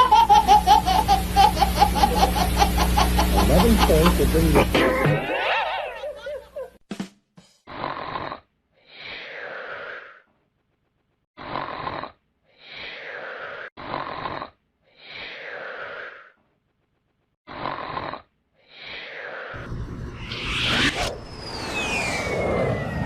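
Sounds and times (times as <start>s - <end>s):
person snoring: 7.7s - 10.2s, 11.4s - 16.4s, 17.5s - 19.7s.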